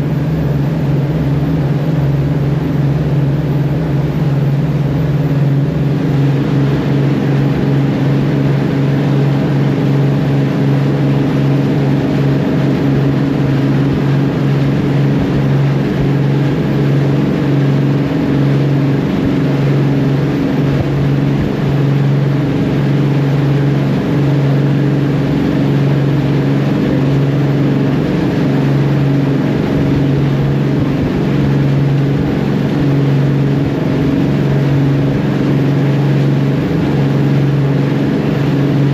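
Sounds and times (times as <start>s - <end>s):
engine droning: 0.0s - 38.9s.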